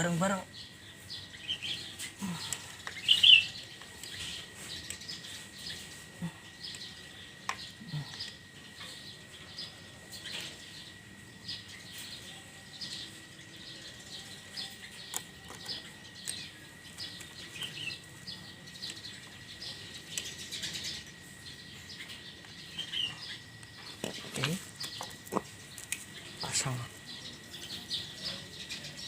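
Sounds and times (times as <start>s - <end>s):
small birds chirping: 0.0s - 29.0s.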